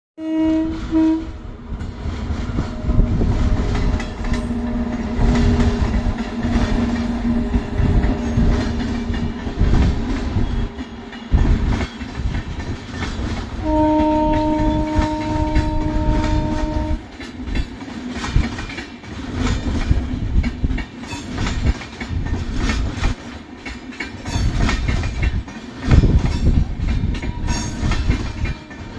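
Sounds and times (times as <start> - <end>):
locomotive horn blast: 0.2 - 1.4, 13.6 - 17.0, 27.8 - 28.9
train wheels clickety-clack: 0.6 - 28.9.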